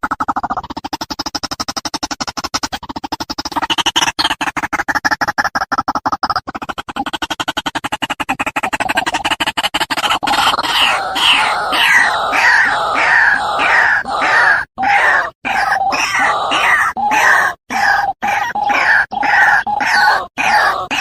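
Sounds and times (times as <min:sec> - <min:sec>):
waterhen calling: 0:10.3 - 0:21.0.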